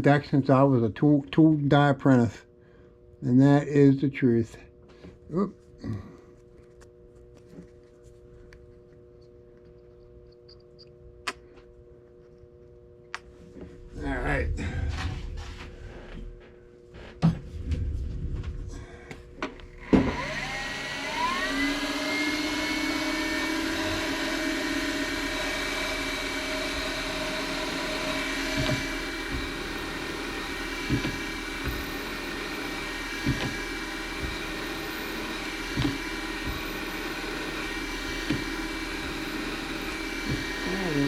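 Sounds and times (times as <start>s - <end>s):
milling machine spindle whine: 19.5s - 41.0s.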